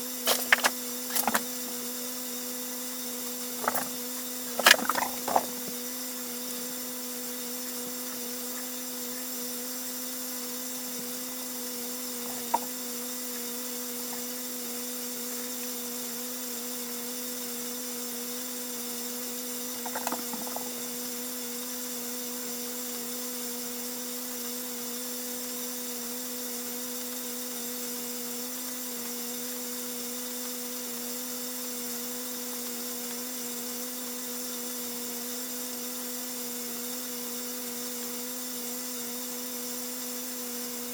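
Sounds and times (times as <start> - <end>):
steady hum: 0.0 - 1.8, 3.4 - 6.4.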